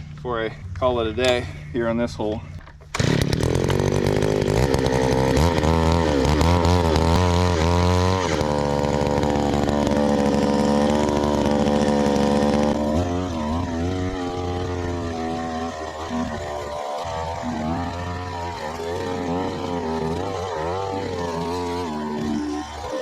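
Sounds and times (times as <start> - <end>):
post hole auger engine running: 2.4 - 23.0.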